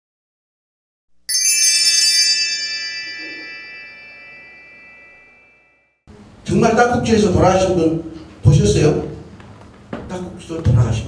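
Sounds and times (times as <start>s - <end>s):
bright high chime: 1.3s - 6.0s.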